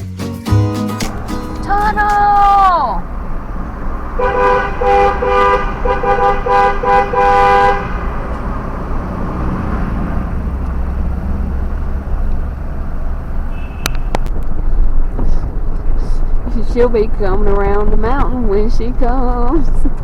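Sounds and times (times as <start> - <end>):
two-note car horn honking: 1.0 - 8.8, 13.5 - 14.2
road rumble inside moving car: 1.0 - 20.0.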